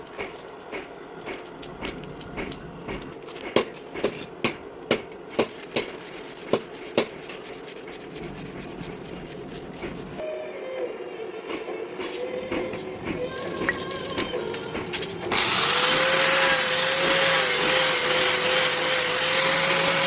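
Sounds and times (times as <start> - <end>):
scraping strokes: 5.4 - 10.2.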